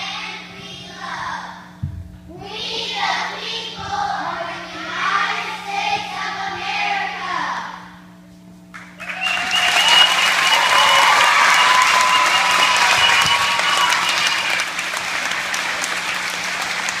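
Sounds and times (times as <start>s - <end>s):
audience applauding: 8.7s - 17.0s.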